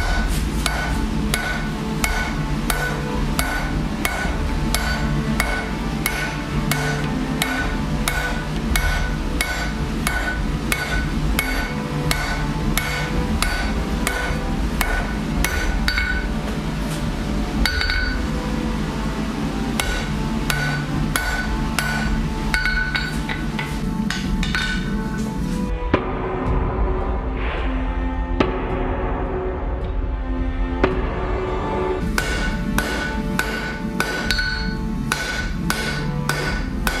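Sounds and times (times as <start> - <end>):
hammer striking metal on anvil: 0.0 - 18.4, 19.7 - 25.3, 32.0 - 37.0.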